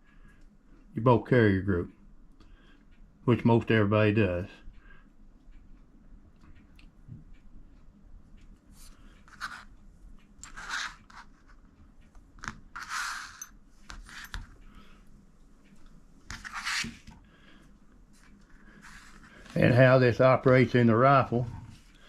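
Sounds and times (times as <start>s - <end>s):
rifle parts clicking and scraping: 10.4s - 11.7s, 12.4s - 14.6s.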